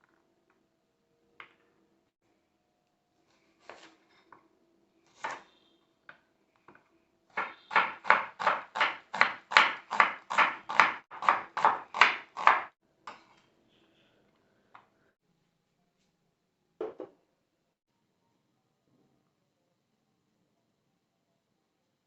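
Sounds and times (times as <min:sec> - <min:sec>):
knife chopping on cutting board: 0:07.3 - 0:13.3.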